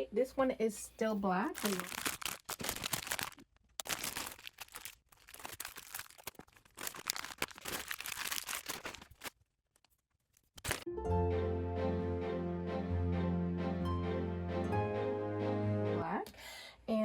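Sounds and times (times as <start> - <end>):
crinkling and rustling: 1.5 - 10.9.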